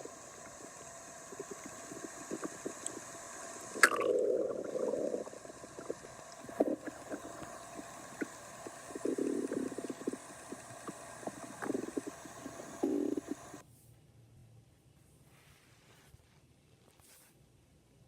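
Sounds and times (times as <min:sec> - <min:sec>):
small pops: 0:00.0 - 0:13.6
stomach growling and gurgling: 0:00.0 - 0:13.6.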